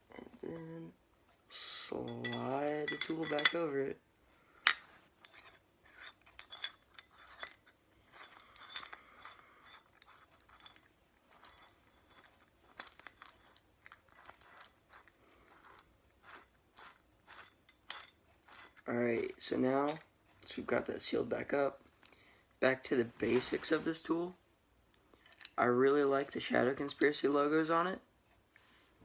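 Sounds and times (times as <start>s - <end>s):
metal multi-tool clicking and clinking: 4.6s - 18.8s.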